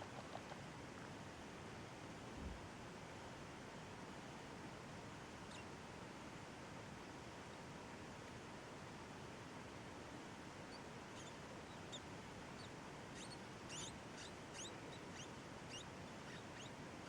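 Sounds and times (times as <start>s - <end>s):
baby rats squeaking: 5.5s - 5.7s, 10.7s - 12.0s, 12.6s - 16.8s.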